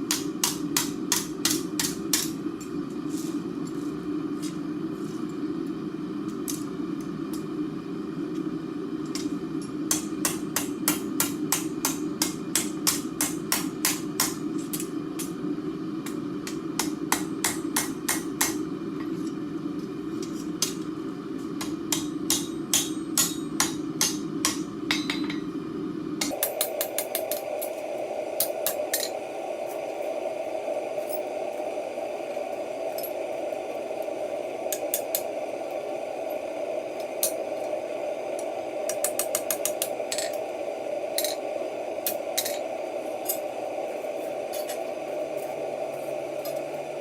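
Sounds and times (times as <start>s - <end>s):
hammer striking steel on anvil: 0.0s - 2.4s, 9.9s - 15.3s, 16.4s - 18.6s, 21.6s - 25.5s
low roar of forge: 0.0s - 47.0s.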